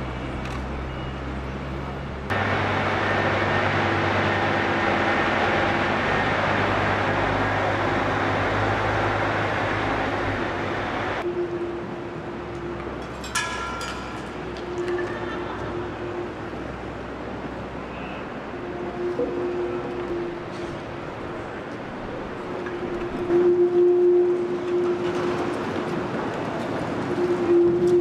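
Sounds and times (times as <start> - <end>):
loud rumbling drone: 2.3 - 13.0.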